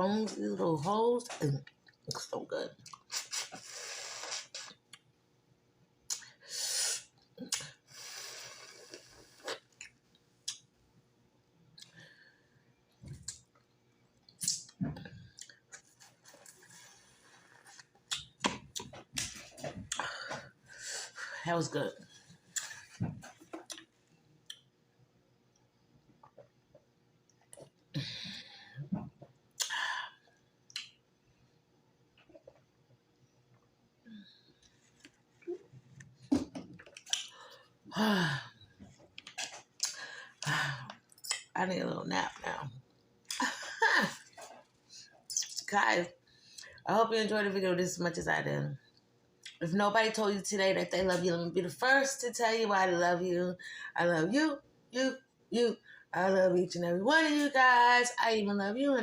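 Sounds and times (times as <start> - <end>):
wet lip smacks and clicks: 36.8 - 37.4.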